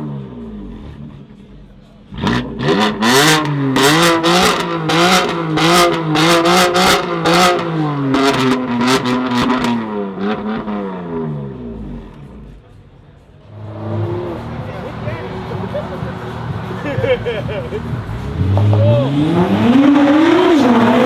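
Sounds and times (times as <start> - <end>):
sports car engine revving: 0.0 - 21.0
exhaust pops and bangs: 13.6 - 20.9.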